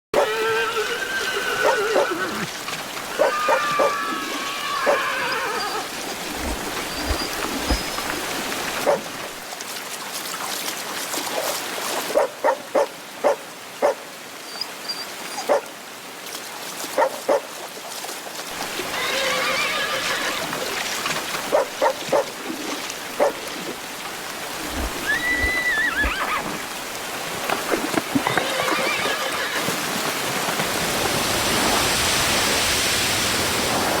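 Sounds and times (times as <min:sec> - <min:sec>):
horse whinnying: 0:00.2 - 0:08.1, 0:18.7 - 0:20.8, 0:24.5 - 0:26.9, 0:27.5 - 0:29.8
steady rain: 0:00.2 - 0:09.9, 0:18.4 - 0:34.0.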